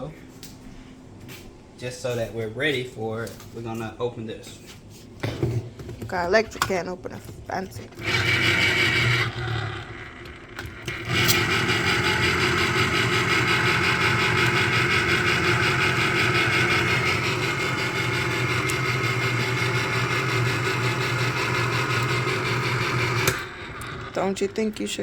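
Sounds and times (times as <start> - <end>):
electric can opener motor running: 7.8 - 25.0.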